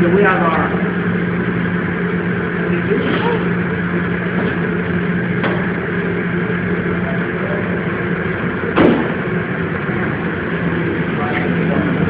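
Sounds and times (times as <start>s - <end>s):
steady mechanical hum: 0.0s - 12.0s
loud knock: 8.8s - 9.2s.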